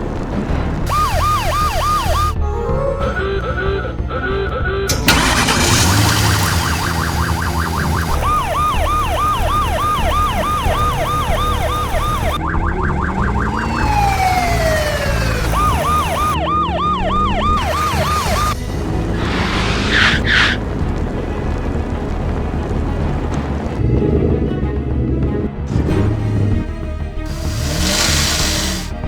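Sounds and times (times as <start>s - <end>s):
emergency siren warbling and yelping: 0.9s - 2.4s, 5.1s - 18.6s, 19.2s - 20.6s.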